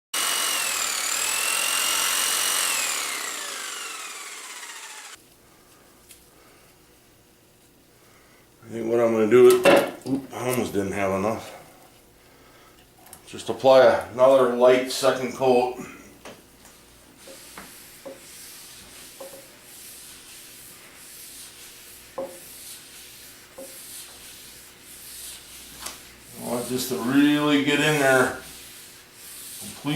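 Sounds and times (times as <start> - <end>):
power tool motor whining: 0.2 - 5.2
hissing strokes on wood: 16.8 - 29.9.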